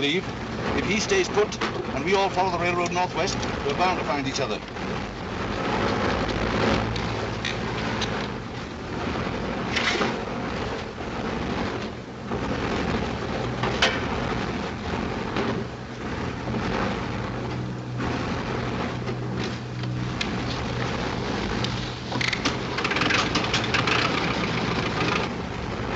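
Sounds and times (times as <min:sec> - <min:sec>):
rushing wind noise: 0:00.0 - 0:25.9
aircraft engines droning: 0:13.4 - 0:25.8
sharp knocks and clatters: 0:13.6 - 0:14.2, 0:22.1 - 0:25.3.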